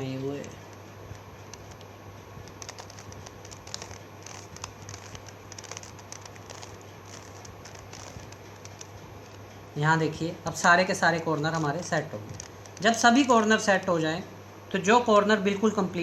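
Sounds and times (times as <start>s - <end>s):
steady low hum: 0.0s - 16.0s
puzzle cube clicks twisting: 0.4s - 9.5s, 11.0s - 13.4s.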